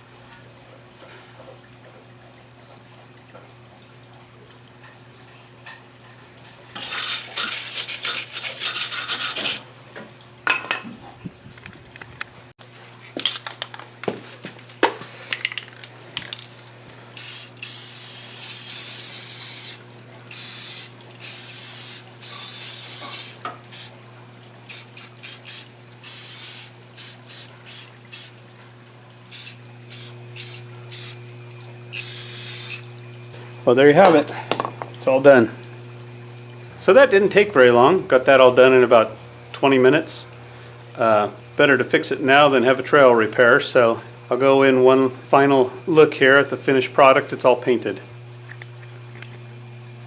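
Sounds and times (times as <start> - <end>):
spray paint can hissing: 6.8 - 9.6, 17.2 - 23.9, 24.7 - 28.4, 29.3 - 31.2, 31.9 - 32.9.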